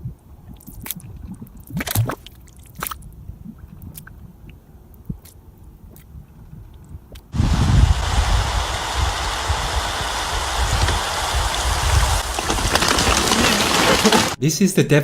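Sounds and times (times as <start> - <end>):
wet squelching and gurgling: 0.5 - 4.2.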